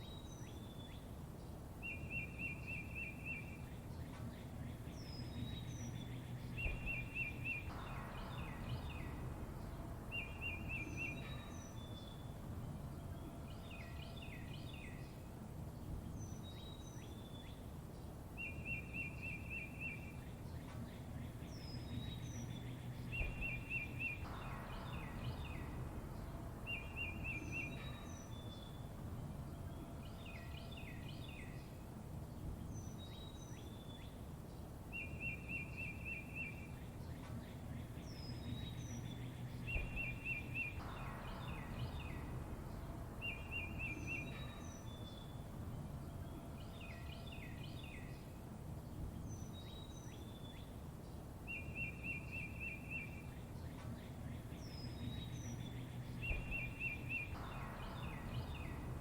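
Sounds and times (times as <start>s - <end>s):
low background rumble: 0.0s - 59.0s
songbirds chirping: 0.0s - 59.0s
bird trill: 4.8s - 15.1s, 18.4s - 31.7s, 34.9s - 48.3s, 51.5s - 59.0s.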